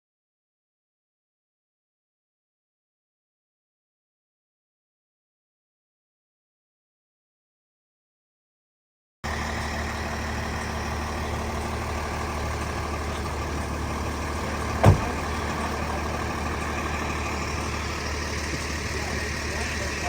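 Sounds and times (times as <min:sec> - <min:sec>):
vehicle engine idling: 0:09.2 - 0:20.0
sharp knock: 0:14.8 - 0:15.2.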